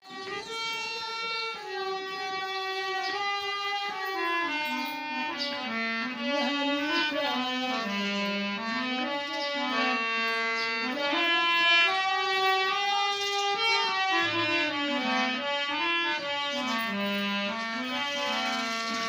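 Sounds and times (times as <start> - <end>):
reedy wind instrument melody: 0.0 - 19.0.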